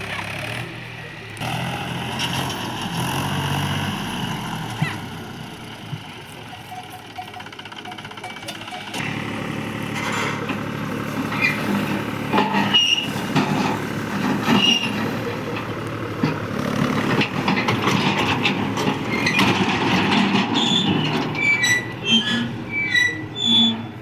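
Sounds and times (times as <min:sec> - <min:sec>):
diesel engine running: 0:00.0 - 0:24.0
high-pitched metallic squeals: 0:06.5 - 0:09.1, 0:12.3 - 0:15.6, 0:19.0 - 0:24.0.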